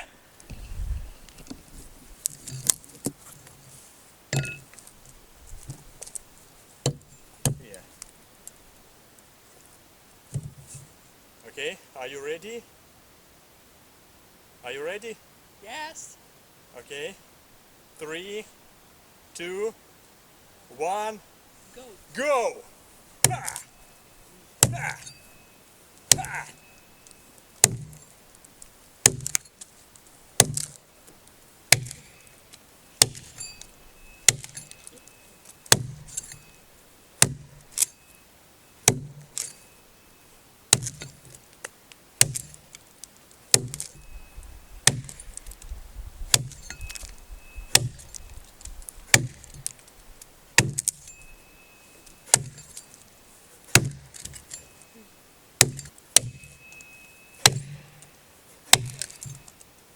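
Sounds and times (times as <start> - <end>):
axe chopping log: 23.2 - 23.7, 24.6 - 25.1, 26.1 - 26.5, 27.6 - 28.0, 29.0 - 29.4, 30.4 - 30.7, 31.7 - 32.1, 33.0 - 33.4, 34.3 - 34.6, 35.7 - 36.1, 40.8 - 41.1, 42.2 - 42.6, 43.5 - 43.9, 44.8 - 45.2, 46.3 - 46.6, 47.7 - 48.1, 49.1 - 49.7, 50.6 - 51.0, 52.3 - 52.7, 53.7 - 54.5, 55.6 - 56.5, 57.4 - 57.9, 58.7 - 59.4.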